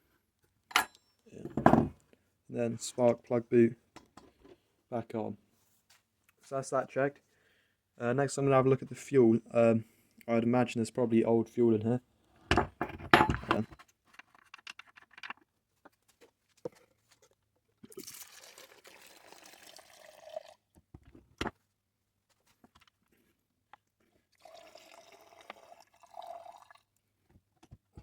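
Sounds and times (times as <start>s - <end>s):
fuel pouring into a vessel: 17.9s - 20.7s, 24.3s - 26.9s.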